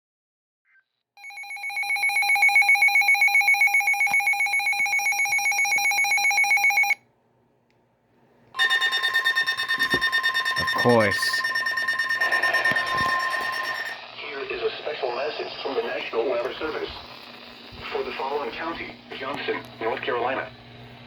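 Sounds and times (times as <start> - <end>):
high-pitched electronic alert beeping: 8.6 - 14.0.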